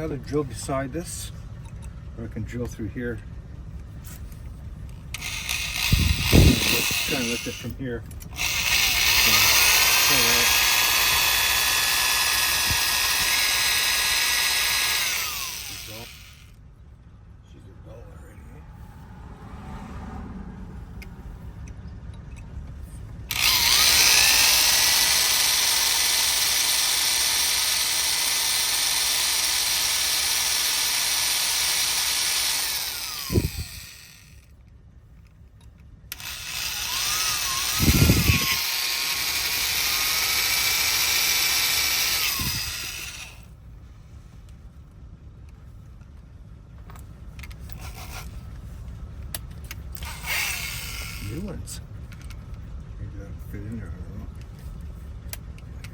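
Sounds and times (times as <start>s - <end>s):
electric drill boring into metal: 5.1s - 16.5s, 23.3s - 34.4s, 36.1s - 43.5s, 50.0s - 51.4s.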